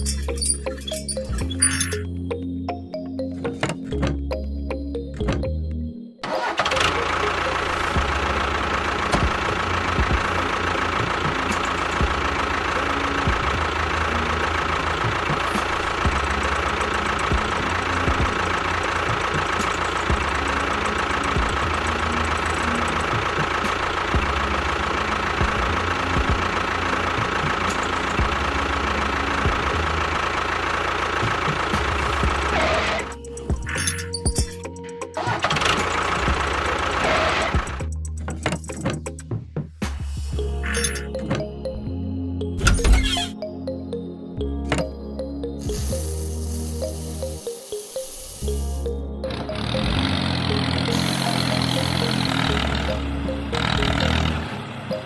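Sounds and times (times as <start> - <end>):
engine running with knocking: 6.4 - 39.2, 49.3 - 55.0.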